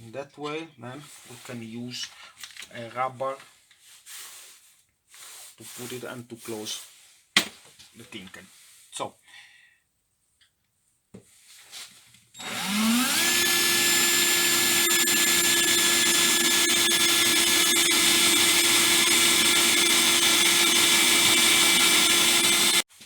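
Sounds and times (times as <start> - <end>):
electric drill whining: 12.4 - 22.9.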